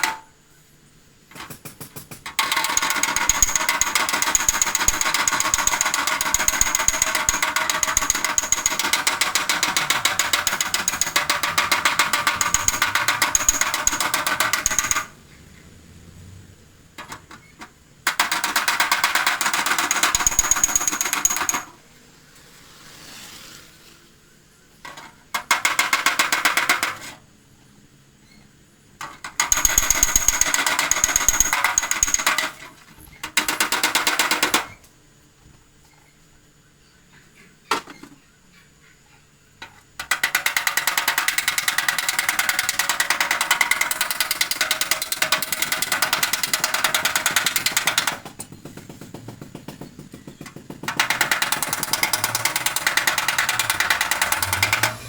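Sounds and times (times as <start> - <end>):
hammer tapping on sheet steel: 1.3 - 15.1, 18.1 - 21.7, 29.4 - 32.5.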